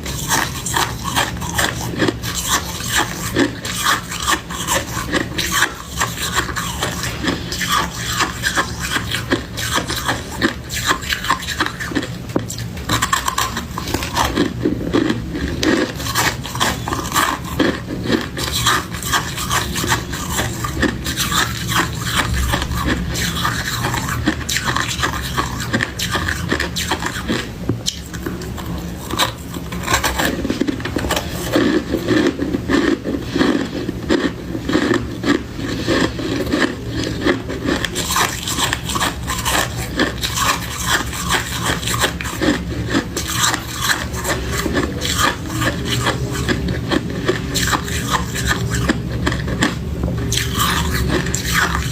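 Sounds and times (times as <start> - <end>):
frost crunching and scraping: 0.0 - 51.9.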